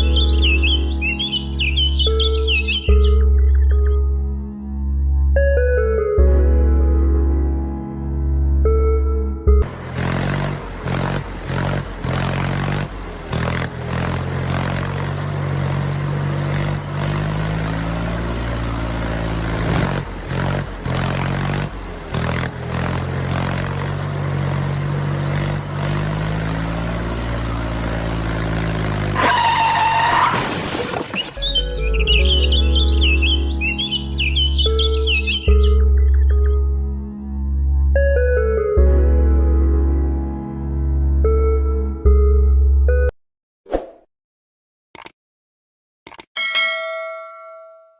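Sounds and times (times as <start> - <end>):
tractor engine running: 9.6 - 30.3, 31.0 - 36.7.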